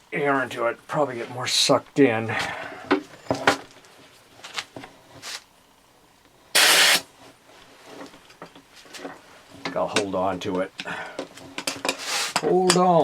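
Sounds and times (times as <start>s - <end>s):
compressed air hissing: 6.6s - 7.1s.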